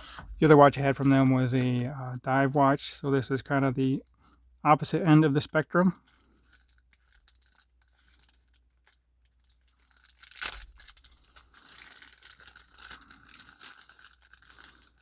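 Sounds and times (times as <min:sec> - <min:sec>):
packaging crinkling and rustling: 0:00.9 - 0:02.6, 0:06.0 - 0:15.0
packaging ripping: 0:06.0 - 0:15.0.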